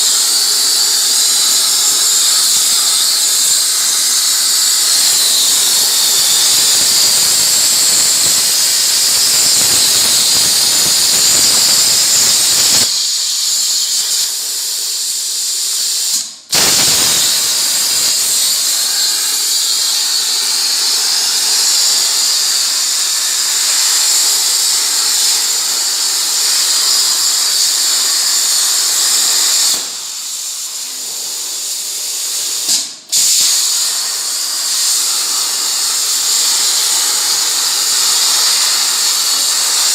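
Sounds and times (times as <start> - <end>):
plasma torch hissing: 0.0 - 39.9.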